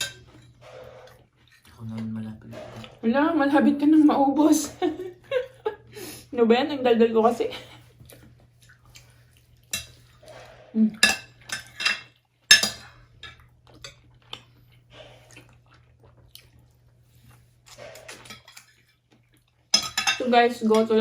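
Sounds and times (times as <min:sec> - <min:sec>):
spoons clinking against bowls: 0:00.0 - 0:00.6, 0:09.7 - 0:10.1, 0:11.0 - 0:14.0, 0:17.8 - 0:18.8, 0:19.7 - 0:21.0.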